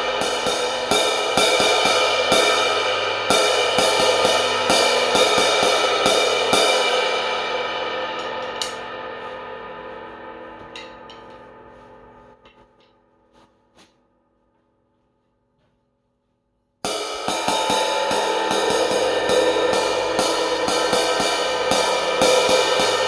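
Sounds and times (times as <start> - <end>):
crash cymbal struck with drumsticks: 0.0 - 9.4, 16.9 - 23.0.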